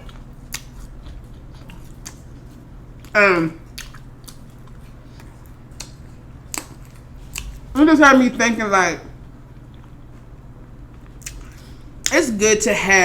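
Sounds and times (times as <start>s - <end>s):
person chewing food: 0.0s - 7.8s, 9.2s - 12.1s
wet mouth clicks: 3.8s - 4.8s, 11.2s - 12.2s.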